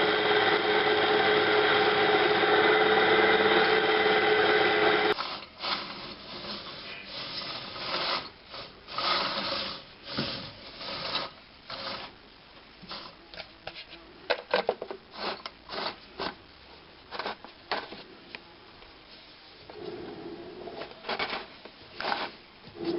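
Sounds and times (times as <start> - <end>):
scraping and rustling handling noises: 12.8 - 20.0, 20.8 - 22.9.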